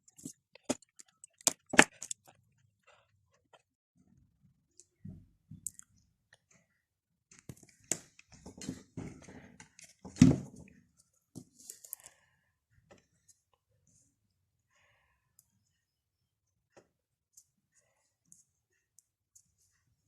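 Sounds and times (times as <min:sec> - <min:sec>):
small parts clicking and knocking: 0:00.0 - 0:03.7.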